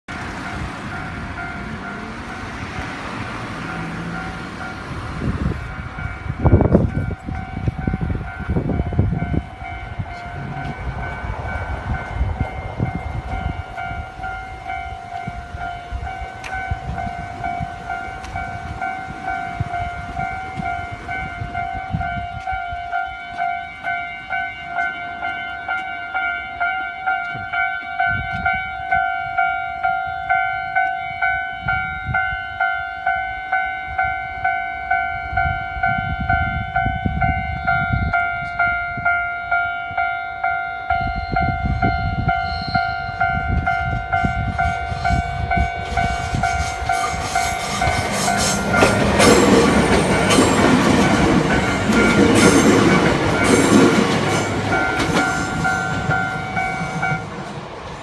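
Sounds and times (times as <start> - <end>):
train wheels rumbling and knocking: 0.1 - 29.1, 41.0 - 58.0
level crossing bell ringing: 5.6 - 57.4.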